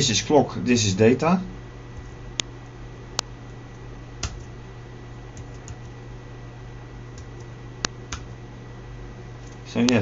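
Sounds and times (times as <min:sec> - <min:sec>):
low electrical hum: 0:00.0 - 0:10.0
computer keyboard keystrokes: 0:04.2 - 0:04.5.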